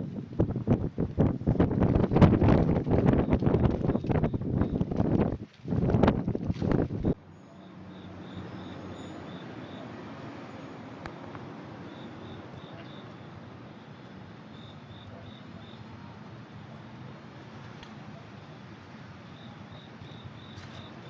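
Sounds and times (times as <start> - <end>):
steady background hiss: 0.3 - 21.0
insect chirping: 7.2 - 15.9, 18.4 - 21.0.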